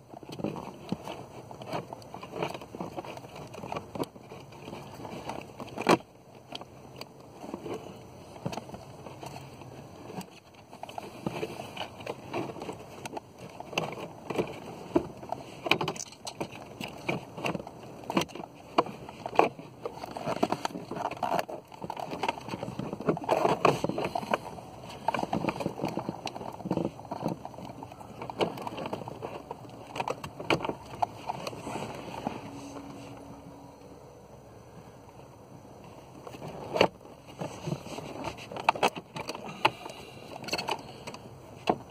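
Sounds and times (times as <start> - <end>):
plastic rustling: 0.1 - 33.4.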